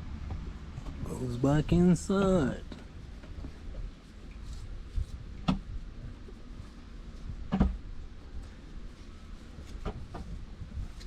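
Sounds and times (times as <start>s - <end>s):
low steady rumble: 0.0s - 11.0s.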